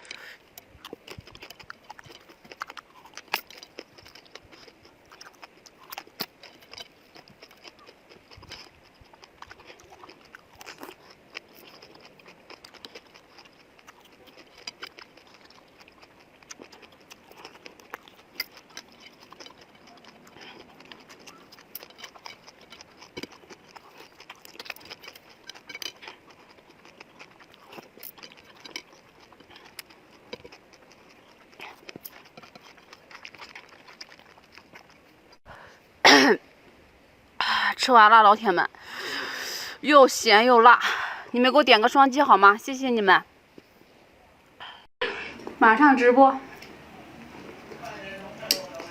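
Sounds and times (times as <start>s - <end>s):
person chewing: 0.0s - 35.6s, 46.6s - 48.9s.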